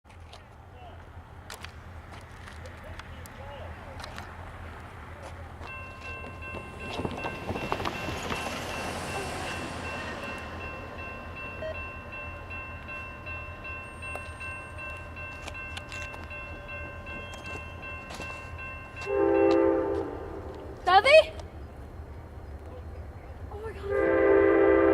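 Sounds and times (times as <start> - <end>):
passenger train rumbling: 0.3 - 24.9
train horn blast: 19.0 - 20.6, 23.9 - 24.9.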